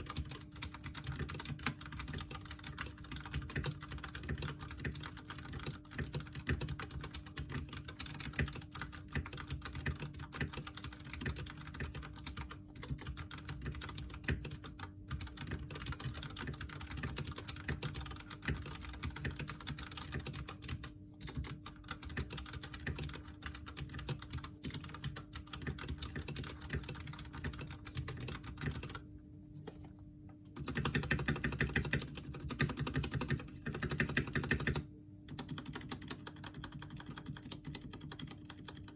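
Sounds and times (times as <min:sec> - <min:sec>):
mechanical keyboard typing: 0:00.0 - 0:29.1, 0:30.6 - 0:38.9.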